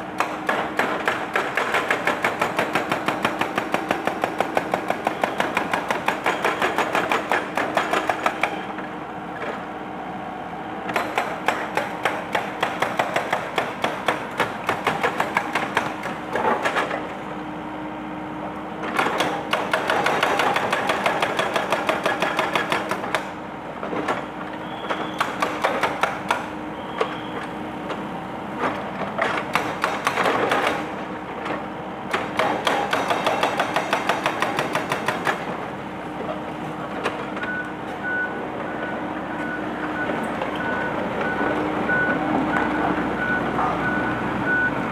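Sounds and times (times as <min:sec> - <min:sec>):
engine hum: 0:00.0 - 0:44.9
hydraulic breaker hammering concrete: 0:00.2 - 0:08.7, 0:10.9 - 0:17.0, 0:18.9 - 0:23.4, 0:25.1 - 0:26.6, 0:29.2 - 0:31.0, 0:32.1 - 0:35.6.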